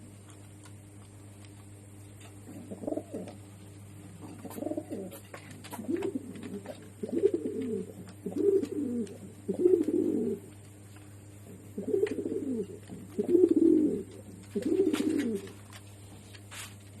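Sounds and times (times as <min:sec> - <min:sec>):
pigeon cooing: 0:02.5 - 0:03.4, 0:04.2 - 0:10.6, 0:11.4 - 0:15.6.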